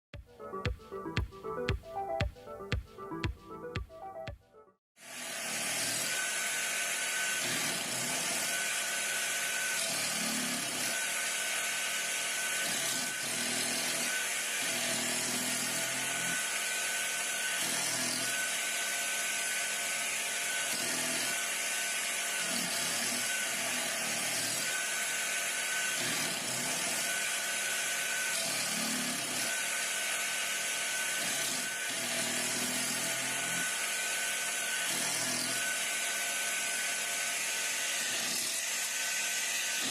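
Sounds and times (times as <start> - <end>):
coconut shaving machine whirring: 5.0 - 39.9.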